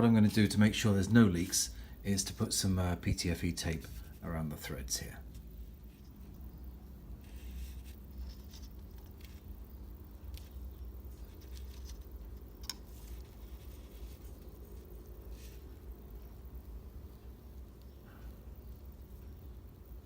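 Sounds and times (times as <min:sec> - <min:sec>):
low steady hum: 0:00.0 - 0:20.0
tape rustling: 0:05.2 - 0:16.8.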